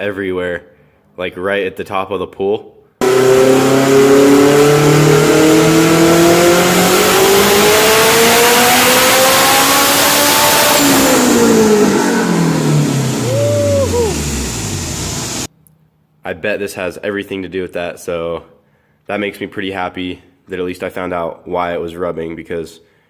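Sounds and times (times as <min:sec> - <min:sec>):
turbocharged car engine revving: 0:03.0 - 0:15.5
turbo whistle: 0:13.2 - 0:14.4.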